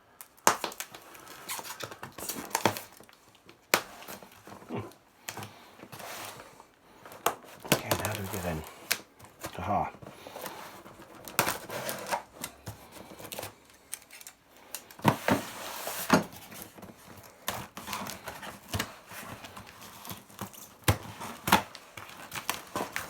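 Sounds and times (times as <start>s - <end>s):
cardboard parcel being opened: 0.0s - 23.0s
tape and packaging rustling: 0.0s - 23.0s.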